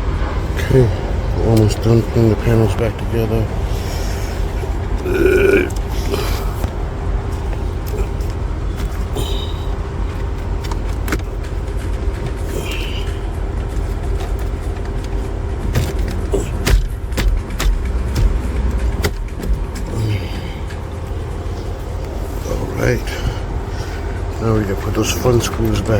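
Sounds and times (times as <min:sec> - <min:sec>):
low hum of car: 0:00.0 - 0:25.9
plastic trim panels snapping: 0:15.7 - 0:19.9.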